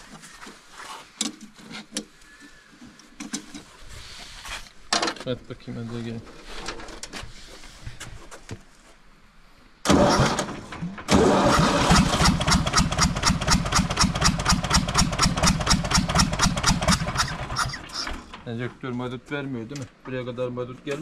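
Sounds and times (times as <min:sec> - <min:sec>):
diesel engine cranking on starter: 0:09.8 - 0:18.6.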